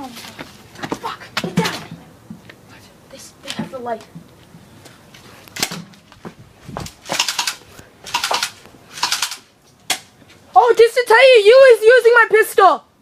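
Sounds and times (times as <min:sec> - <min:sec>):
airsoft gun bursts: 0:07.0 - 0:09.4.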